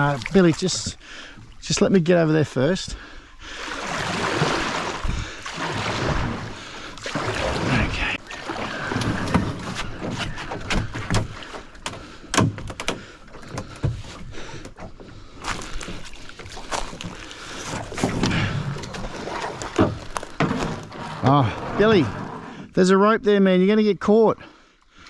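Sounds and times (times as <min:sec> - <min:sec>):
paddle splashing water: 0:02.9 - 0:22.7
paddle knocking on hull: 0:03.7 - 0:14.1.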